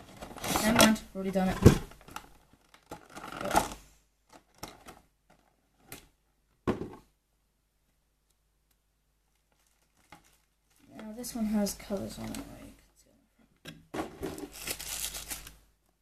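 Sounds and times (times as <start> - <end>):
packaging rustle: 9.3 - 11.1, 14.2 - 15.6.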